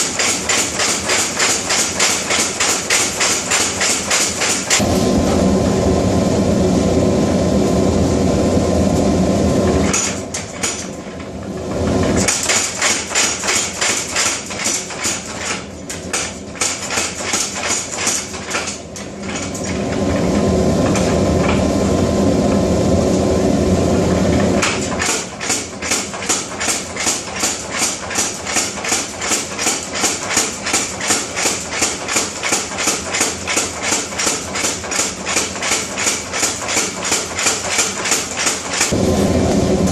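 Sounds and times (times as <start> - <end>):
power hammer striking hot steel: 0.0 - 5.5, 9.7 - 11.0, 12.0 - 21.6, 24.6 - 39.6.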